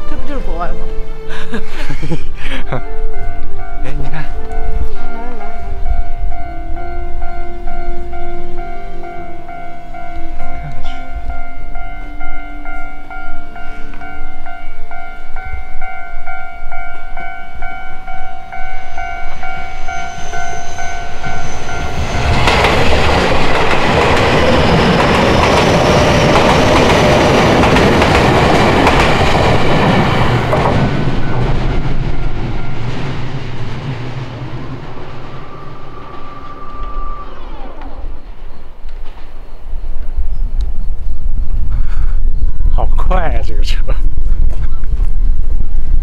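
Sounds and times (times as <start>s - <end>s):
train passing at speed: 0.0s - 46.0s
level crossing warning bell: 2.7s - 33.4s.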